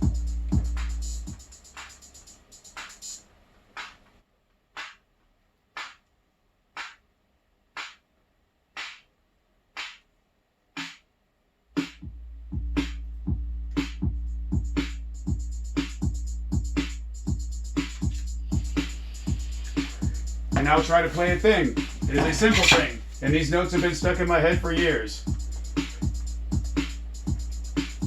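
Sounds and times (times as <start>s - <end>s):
heavy bass drum: 0.0s - 2.1s, 11.8s - 28.0s
drum machine beat: 0.0s - 3.2s, 3.8s - 4.0s, 4.8s - 5.1s, 5.7s - 6.0s, 6.7s - 7.1s, 7.7s - 8.0s, 8.7s - 9.1s, 9.8s - 10.1s, 10.8s - 11.0s, 11.8s - 28.0s
hi-hat pattern: 0.0s - 4.0s, 4.7s - 5.1s, 5.7s - 6.0s, 6.7s - 7.1s, 7.7s - 8.1s, 8.7s - 9.1s, 9.7s - 10.1s, 10.7s - 11.1s, 11.8s - 28.0s
snare hits: 4.8s - 5.0s, 5.8s - 6.0s, 6.8s - 7.0s, 7.8s - 8.0s, 8.8s - 9.1s, 9.8s - 10.1s, 10.8s - 11.0s, 20.6s - 23.0s.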